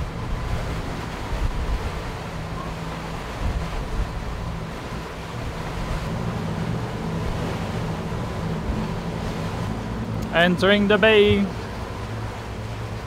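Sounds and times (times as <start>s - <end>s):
boat motor humming: 0.0s - 13.0s
water washing along hulls: 0.0s - 13.0s
wind on microphone: 0.0s - 13.0s.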